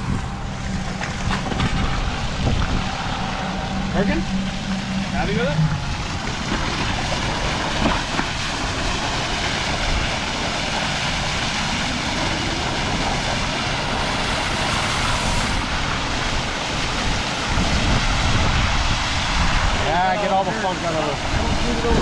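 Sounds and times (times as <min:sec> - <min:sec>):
water gushing from hydrant: 0:00.0 - 0:22.0.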